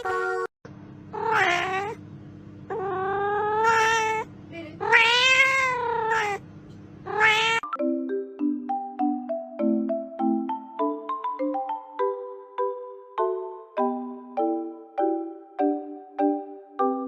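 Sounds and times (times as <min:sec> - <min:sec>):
steady low hum: 0:00.0 - 0:07.6
cat meowing in long yowls: 0:01.2 - 0:02.0, 0:02.7 - 0:06.4, 0:07.1 - 0:07.6.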